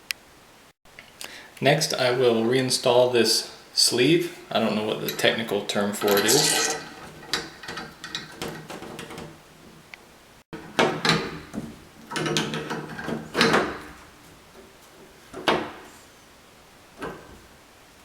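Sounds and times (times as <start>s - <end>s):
knocks and scraping of parts: 4.9s - 9.9s, 10.6s - 16.1s.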